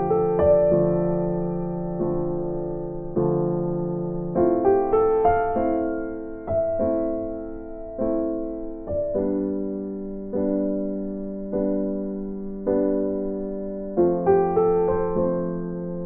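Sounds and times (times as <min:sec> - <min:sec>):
gentle piano chords: 0:00.0 - 0:16.0.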